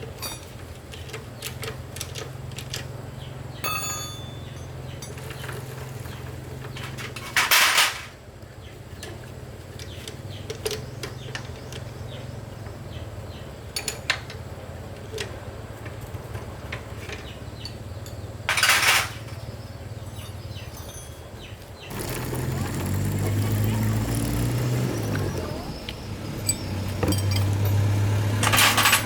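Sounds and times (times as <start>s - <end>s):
metal tools clinking: 0.1s - 2.9s, 3.6s - 6.0s, 17.0s - 23.9s, 24.9s - 29.0s.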